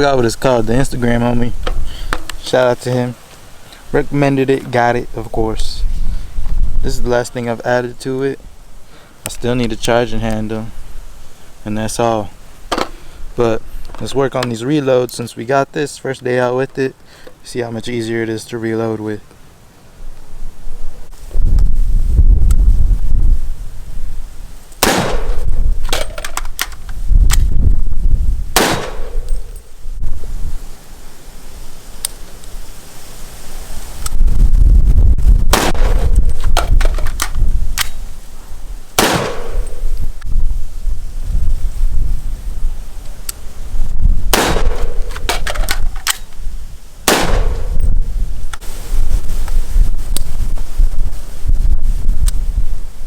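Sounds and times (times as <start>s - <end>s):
wind rumble on microphone: 3.9s - 7.6s, 20.0s - 30.8s, 31.5s - 53.0s
sharp clicks: 24.7s - 27.5s
rifle shots with echo: 24.8s - 26.2s, 28.6s - 29.6s, 35.6s - 36.2s, 39.0s - 39.8s, 44.3s - 45.5s, 47.1s - 47.8s.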